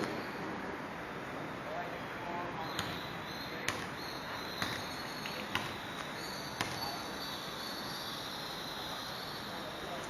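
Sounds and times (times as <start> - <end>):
background hiss: 0.0 - 10.0
insects chirring: 2.6 - 10.0.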